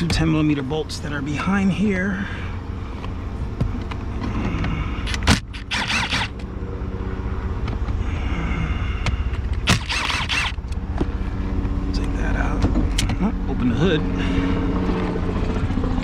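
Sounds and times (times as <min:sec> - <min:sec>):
steady low hum: 0:00.0 - 0:16.0
ratchet tool rattling: 0:05.1 - 0:06.4
sharp click: 0:09.5 - 0:10.8.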